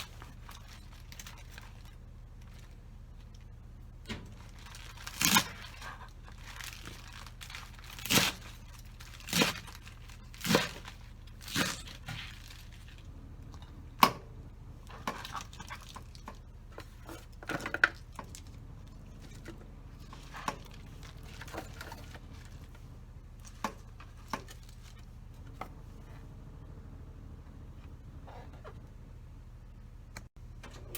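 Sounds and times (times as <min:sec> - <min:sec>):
rasping tearing rustling: 0:04.2 - 0:13.1.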